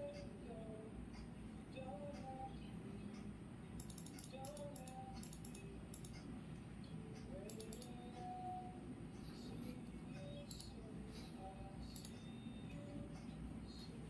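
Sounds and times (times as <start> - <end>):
low background hum: 0.0 - 14.0
keyboard typing: 3.8 - 6.3, 7.4 - 8.0, 10.2 - 10.8, 11.9 - 12.2.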